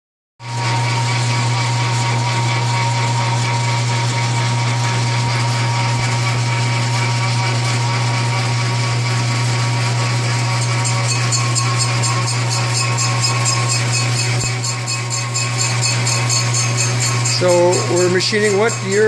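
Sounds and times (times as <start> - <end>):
electric motor humming: 0.5 - 19.0.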